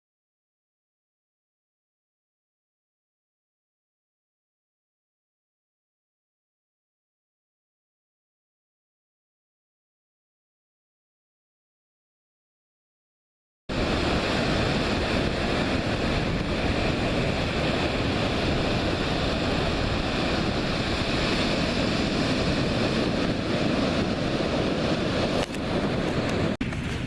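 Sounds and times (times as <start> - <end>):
ocean surf rushing: 13.7 - 27.0
wind buffeting microphone: 13.7 - 27.0.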